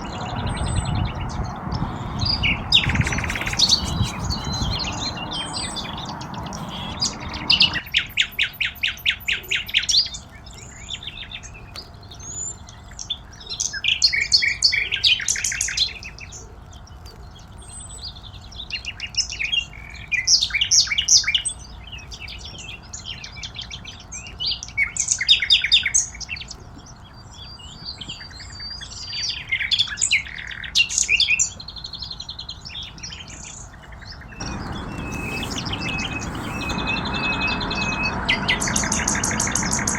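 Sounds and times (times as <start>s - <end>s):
songbirds chirping and trilling: 0.0s - 39.9s
short whistled bird notes: 0.5s - 9.0s, 34.4s - 39.9s.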